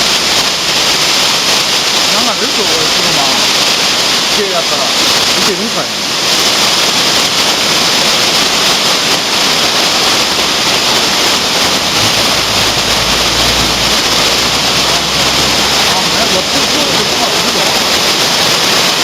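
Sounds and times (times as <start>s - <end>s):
torrential rain pouring: 0.0s - 19.0s
low rumble: 10.3s - 17.9s.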